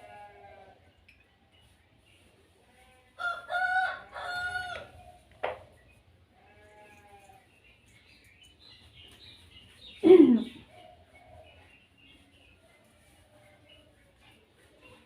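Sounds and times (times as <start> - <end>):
rooster crowing: 3.2 - 5.0.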